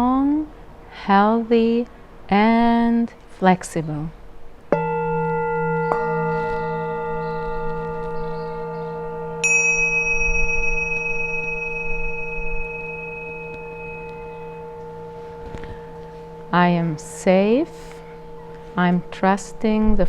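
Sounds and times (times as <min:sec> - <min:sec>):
singing bowls ringing: 0:04.7 - 0:20.0.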